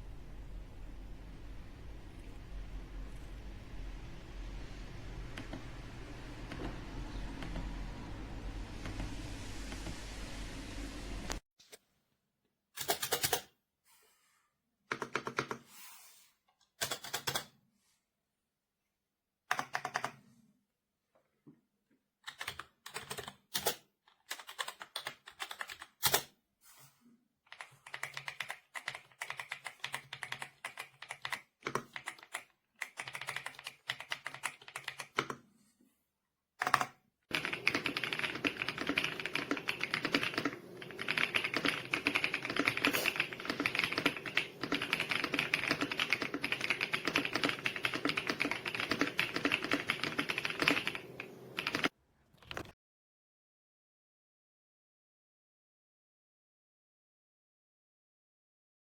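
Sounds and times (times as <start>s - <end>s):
mechanical keyboard typing: 12.8s - 13.5s, 14.9s - 15.6s, 16.8s - 17.5s, 19.5s - 20.2s, 22.3s - 26.3s, 27.5s - 35.4s, 36.6s - 52.7s.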